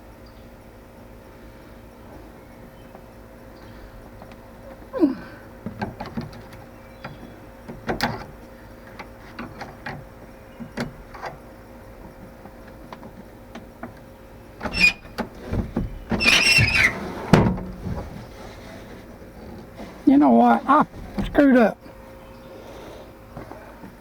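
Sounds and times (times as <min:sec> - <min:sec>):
rattling and scraping: 0:12.0 - 0:21.8.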